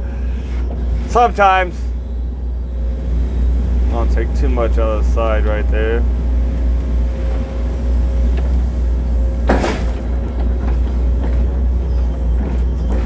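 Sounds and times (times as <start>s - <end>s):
excavator diesel engine drone: 0.0s - 13.0s
faint steady whine: 0.0s - 13.0s
short clatter: 7.1s - 13.0s.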